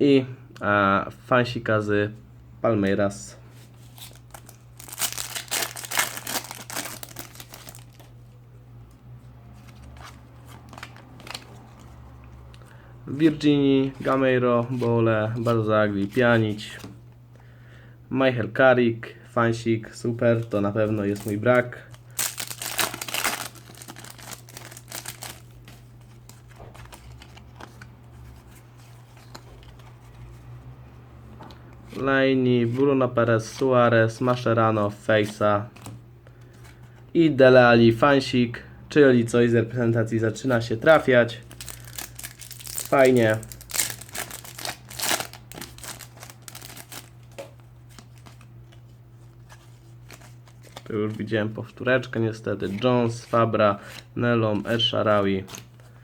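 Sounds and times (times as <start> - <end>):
low electrical hum: 0.0 - 56.0
cards rustling and clicking: 3.6 - 8.2, 9.5 - 17.0, 20.2 - 30.7, 35.2 - 36.9, 40.4 - 51.8, 52.6 - 56.0
foil packet tearing and crinkling: 3.9 - 8.1, 9.8 - 11.9, 21.0 - 27.8, 41.4 - 48.5.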